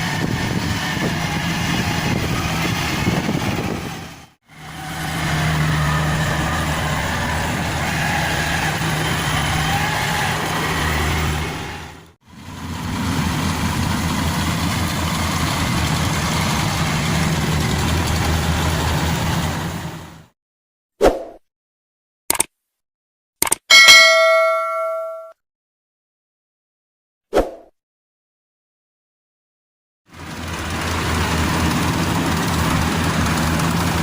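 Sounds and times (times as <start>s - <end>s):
combine harvester engine drone: 0.0s - 20.3s, 30.1s - 34.0s.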